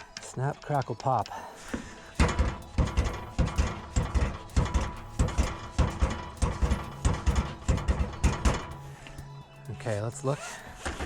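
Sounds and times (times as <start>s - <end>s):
tire bead popping onto rim: 2.2s - 8.9s.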